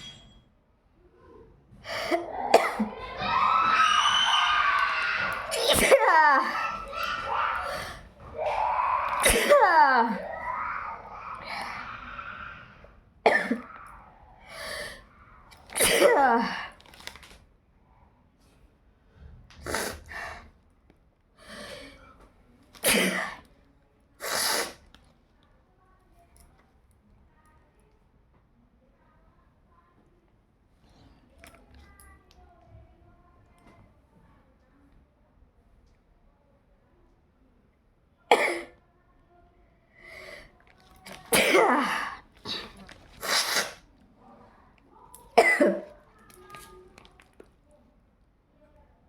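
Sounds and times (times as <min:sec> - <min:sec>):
person sneezing: 0:01.9 - 0:02.9, 0:05.5 - 0:08.1, 0:09.0 - 0:10.3, 0:15.7 - 0:16.6, 0:22.8 - 0:23.4, 0:24.2 - 0:24.8, 0:41.2 - 0:43.9
voiced cry: 0:01.9 - 0:16.7.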